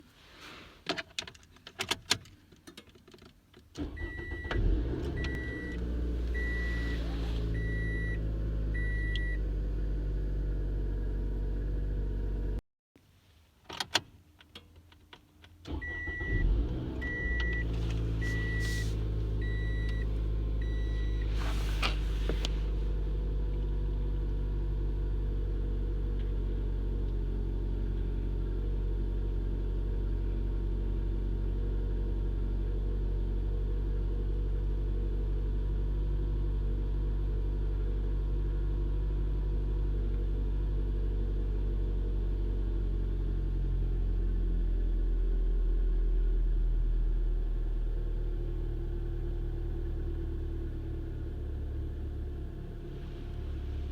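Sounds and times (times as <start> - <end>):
car engine cranking: 3.7 - 9.8, 15.7 - 23.8
car engine idling: 4.0 - 12.6, 16.5 - 31.7
dashboard warning chime beeping: 5.2 - 9.4, 15.8 - 21.3.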